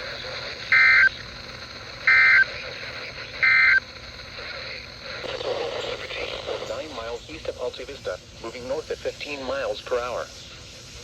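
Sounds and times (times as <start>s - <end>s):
digital data tone bursts: 0.7s - 1.3s, 2.0s - 2.6s, 3.4s - 3.9s.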